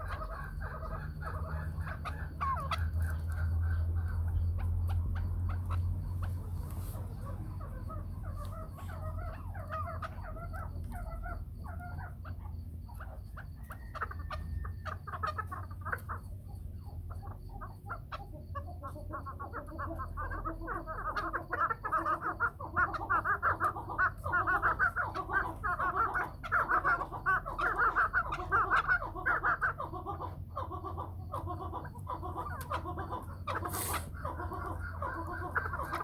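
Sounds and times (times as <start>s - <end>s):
steady low hum: 0.0s - 14.8s
partridges clucking: 21.0s - 36.0s.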